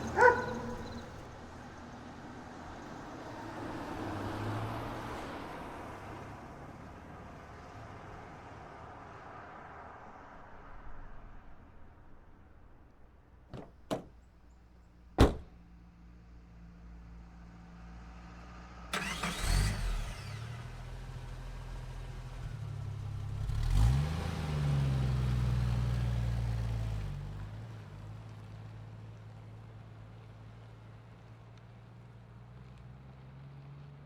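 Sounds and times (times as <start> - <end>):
sharp thump: 13.5 - 14.1, 15.2 - 15.6
car engine cranking and running: 13.5 - 14.2, 15.2 - 15.6, 19.0 - 20.8.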